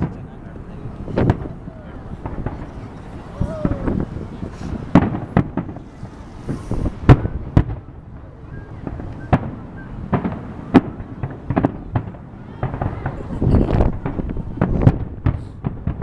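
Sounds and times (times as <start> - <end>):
distant fireworks crackle: 0.0 - 16.0
firework bangs: 0.0 - 16.0.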